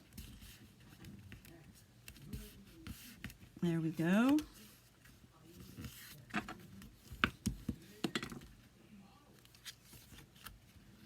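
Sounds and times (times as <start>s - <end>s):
paper rustling: 9.4s - 11.0s.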